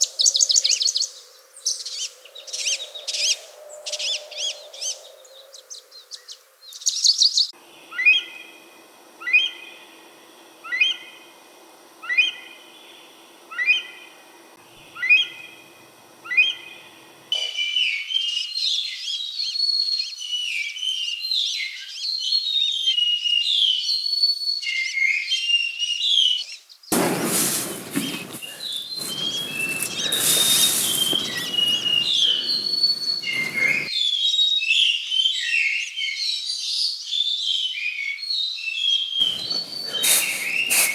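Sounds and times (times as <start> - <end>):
many birds chirping: 26.9 - 33.9, 39.2 - 40.9
bird whistling downward call: 27.0 - 33.9.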